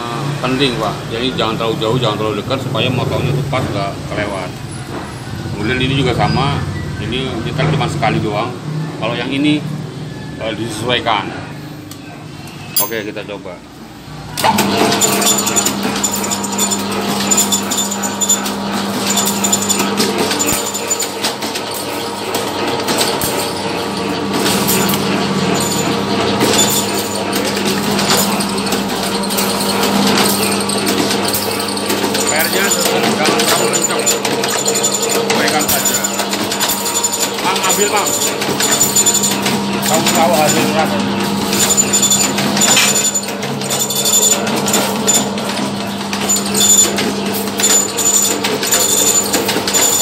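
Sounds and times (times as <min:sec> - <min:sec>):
motor hum: 0:13.8 - 0:50.0
wire rattling through machine: 0:14.3 - 0:50.0
metallic clatter: 0:14.4 - 0:50.0
sharp machine clicks: 0:14.4 - 0:50.0.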